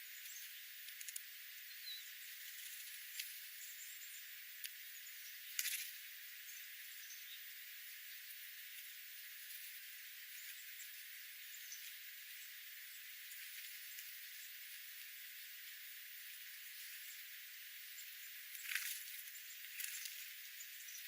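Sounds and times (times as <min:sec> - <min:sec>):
small birds chirping: 0:00.0 - 0:21.0
steady hiss: 0:00.0 - 0:21.0
small click: 0:05.5 - 0:05.9.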